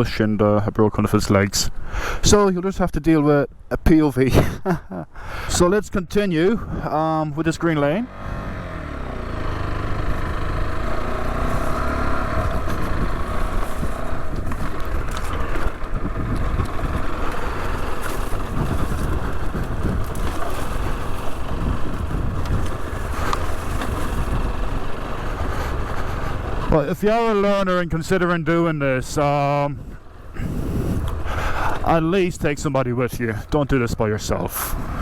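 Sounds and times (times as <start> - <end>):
motorcycle engine running: 7.6 - 27.7
heavy low rumbling: 7.7 - 27.0.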